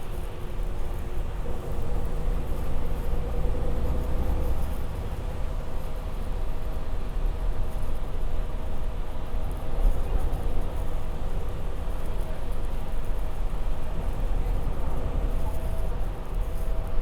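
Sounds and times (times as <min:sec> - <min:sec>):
bus engine rumble: 0:00.0 - 0:17.0.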